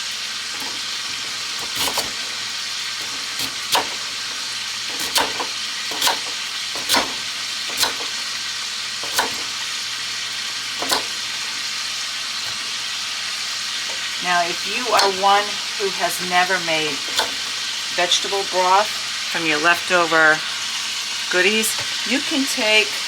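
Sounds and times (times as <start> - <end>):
chicken sizzling in a pan: 0.0 - 23.0
knife chopping on cutting board: 1.6 - 2.2, 3.3 - 4.0, 4.9 - 8.2, 9.0 - 9.5, 10.8 - 11.2, 17.1 - 17.4.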